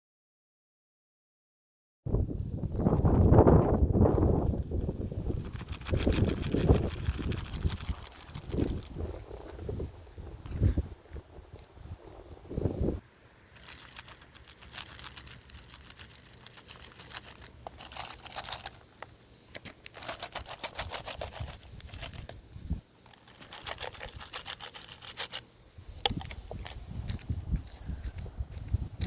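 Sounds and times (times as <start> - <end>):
cats crunching dry food: 4.1 - 11.7, 13.5 - 28.7.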